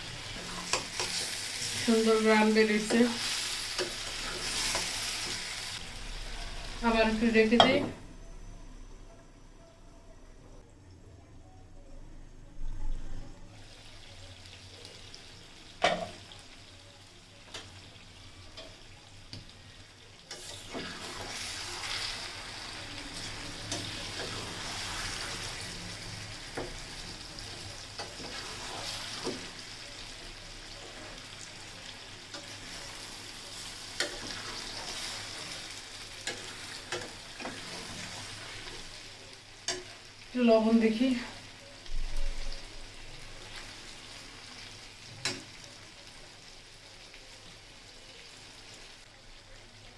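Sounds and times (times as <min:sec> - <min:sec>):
food frying in oil: 0:00.0 - 0:08.1, 0:13.5 - 0:49.9
spatula scraping pan: 0:20.3 - 0:25.8, 0:28.0 - 0:29.6.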